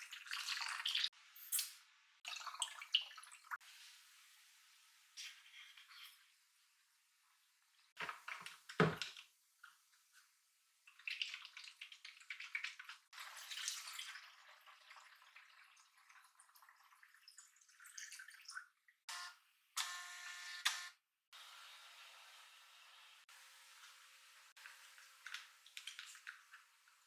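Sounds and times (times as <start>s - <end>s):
water splashing and dripping: 2.2s - 3.7s, 10.9s - 18.9s, 23.7s - 27.0s.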